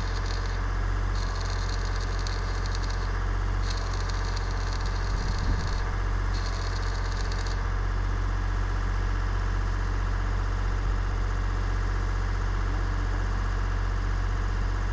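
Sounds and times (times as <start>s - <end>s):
welding arc crackling hiss: 0.0s - 7.7s
engine idling: 0.0s - 14.9s.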